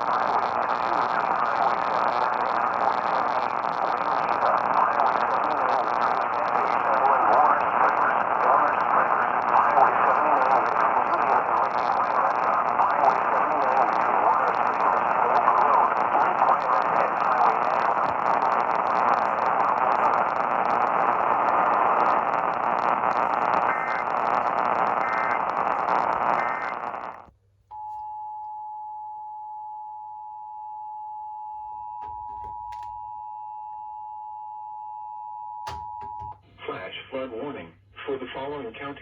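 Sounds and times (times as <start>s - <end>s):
static hiss: 0.0s - 27.3s.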